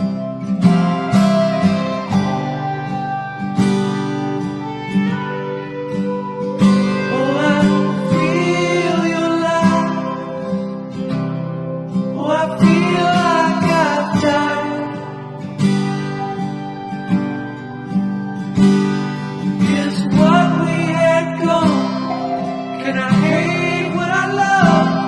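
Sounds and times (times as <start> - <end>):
strummed acoustic guitar: 0.0 - 25.0
person singing: 6.9 - 10.5, 12.2 - 15.1, 19.6 - 25.0.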